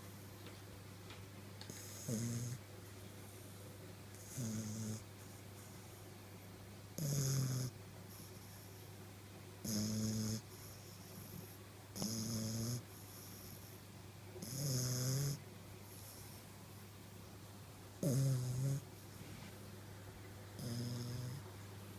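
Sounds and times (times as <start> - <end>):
puppy snoring: 1.6 - 2.6, 4.1 - 5.9, 7.0 - 8.8, 9.6 - 13.8, 14.4 - 16.5, 18.0 - 19.2, 20.6 - 21.5.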